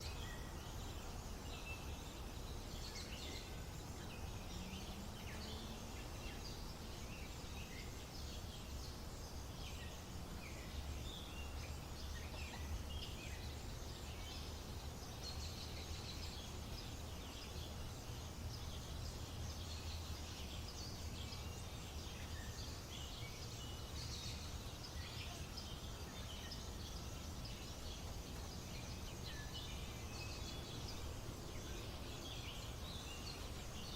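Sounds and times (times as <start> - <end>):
small birds chirping: 0.0 - 33.9.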